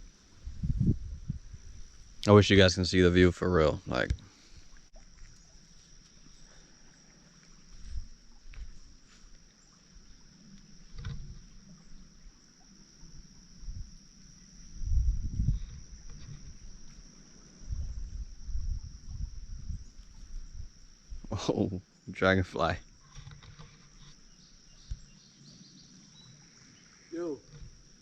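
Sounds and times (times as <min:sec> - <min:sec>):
wind buffeting microphone: 0:00.0 - 0:02.7, 0:14.6 - 0:16.9, 0:17.6 - 0:21.4.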